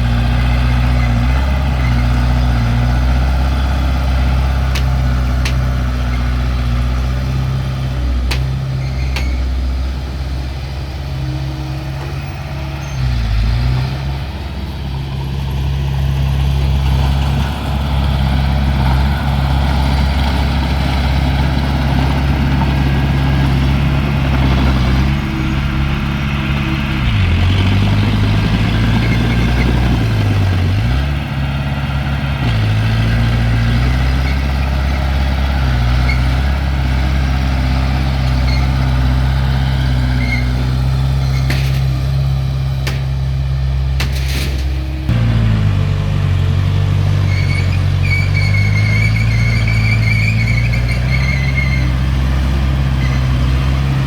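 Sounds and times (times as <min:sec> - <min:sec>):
heavy diesel engine running: 0:00.0 - 0:54.0
sharp clicks or knocks: 0:08.3 - 0:08.6.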